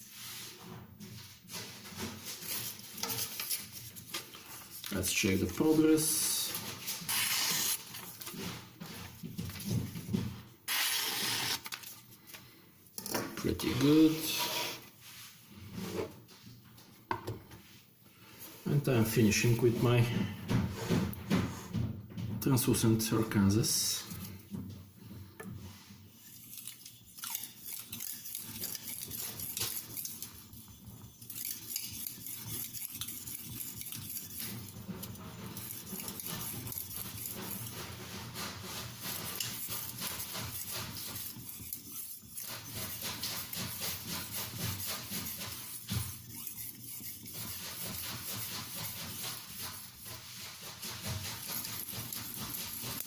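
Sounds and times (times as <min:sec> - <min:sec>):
knife blade scraping on whetstone: 0:13.6 - 0:14.9, 0:26.2 - 0:53.0.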